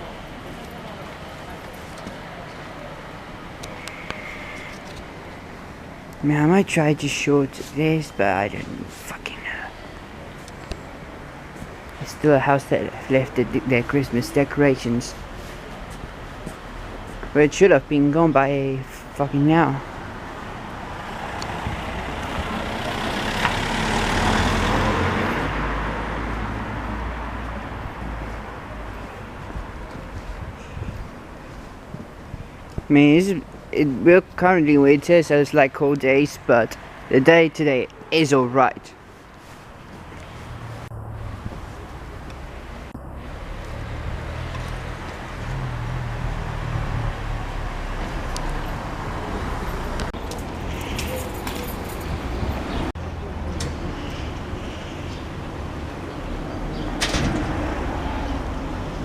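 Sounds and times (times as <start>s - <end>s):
road noise: 0.0s - 59.0s
vehicle driving past: 20.6s - 29.4s, 40.0s - 59.0s.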